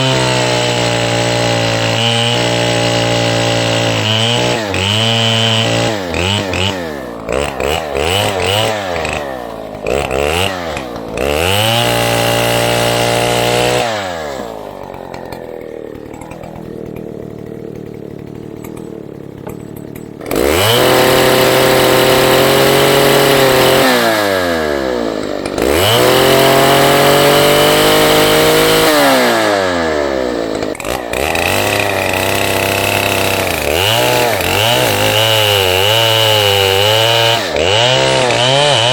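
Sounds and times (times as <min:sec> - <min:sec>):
chainsaw revving: 0:00.0 - 0:38.9.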